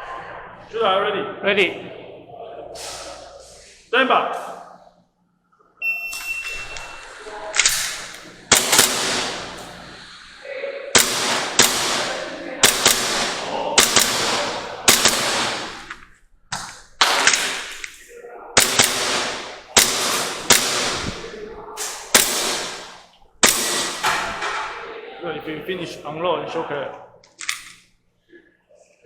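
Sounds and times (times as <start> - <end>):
airsoft pistol shots: 7.6 - 9.7, 11.0 - 16.0, 17.0 - 18.0, 18.6 - 24.7.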